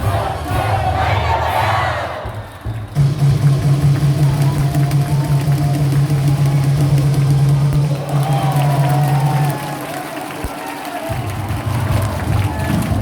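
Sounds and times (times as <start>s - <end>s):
music over pa system: 0.0s - 10.3s.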